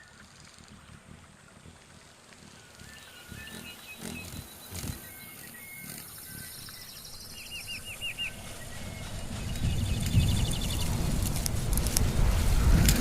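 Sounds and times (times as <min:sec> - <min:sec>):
animal chirping and whistling calls: 0:02.7 - 0:10.9
low rumble: 0:02.7 - 0:13.0.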